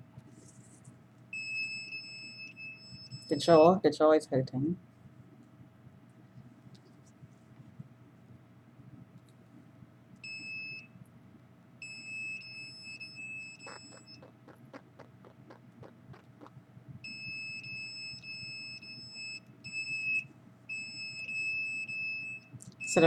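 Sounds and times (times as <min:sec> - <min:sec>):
high-pitched alarm tone: 0:13.5 - 0:16.5
short lower blips: 0:13.6 - 0:16.6.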